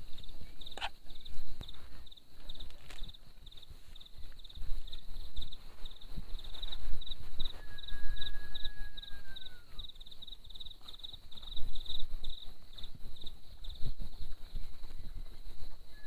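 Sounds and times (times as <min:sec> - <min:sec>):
insect chirping: 0:00.0 - 0:16.0
long falling whistle: 0:07.5 - 0:09.8.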